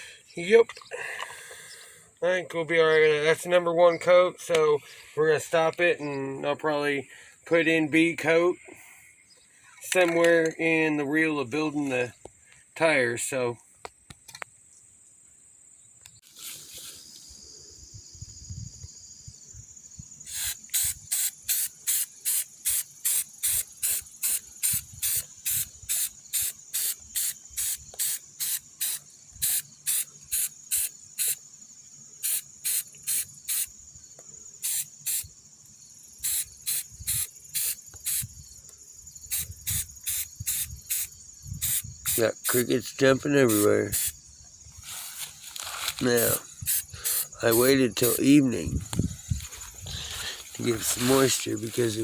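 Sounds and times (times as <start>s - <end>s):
high-pitched insect trill: 14.6s - 52.0s
raspy insect pulses: 16.0s - 52.0s.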